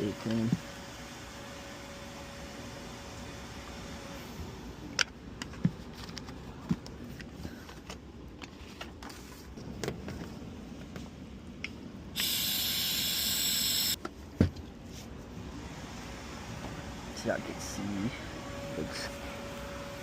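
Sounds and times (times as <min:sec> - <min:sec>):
loud steady hiss: 0:12.2 - 0:14.0.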